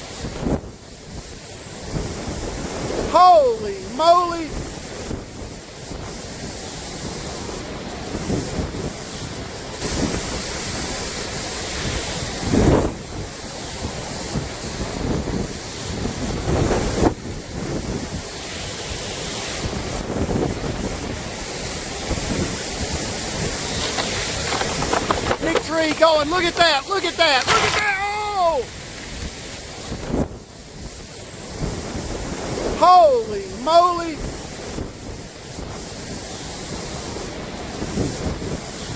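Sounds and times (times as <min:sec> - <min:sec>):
wind buffeting microphone: 0:00.0 - 0:38.9.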